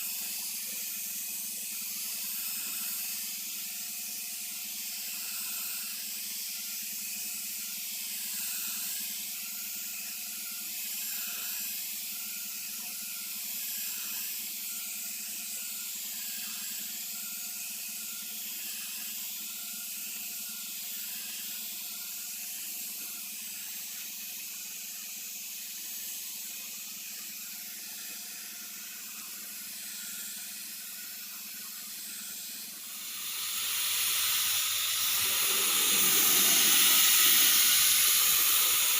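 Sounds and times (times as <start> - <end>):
spraying hiss: 28.4 - 38.9
low hum: 34.8 - 38.9.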